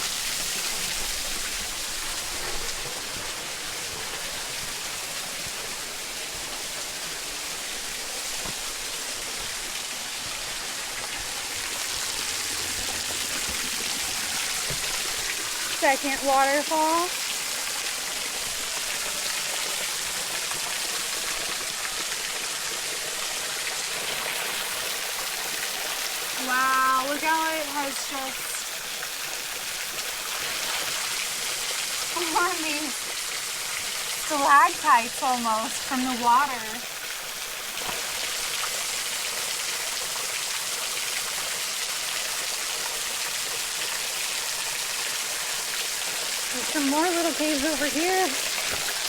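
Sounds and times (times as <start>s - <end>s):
small waterfall splashing on rock: 0.0s - 49.0s
water drips: 7.4s - 22.2s, 23.8s - 41.7s, 43.2s - 49.0s.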